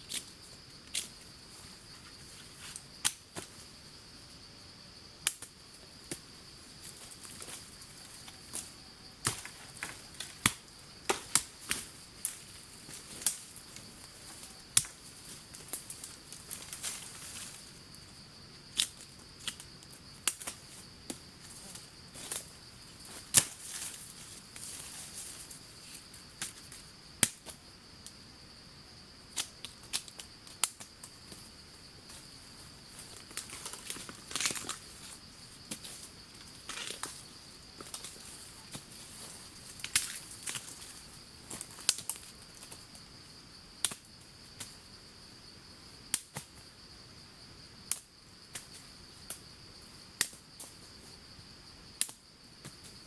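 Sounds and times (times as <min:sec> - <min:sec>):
rustling of plants: 0:00.0 - 0:04.2, 0:05.7 - 0:27.8, 0:29.5 - 0:43.3
insects buzzing: 0:00.0 - 0:53.0
plant stems snapping: 0:09.2 - 0:13.4, 0:33.3 - 0:34.8.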